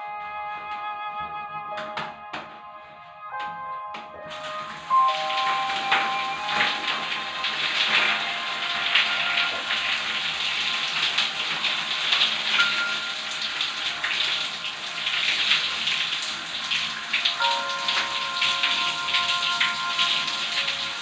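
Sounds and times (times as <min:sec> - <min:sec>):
shower water running and splashing: 0:04.2 - 0:21.0.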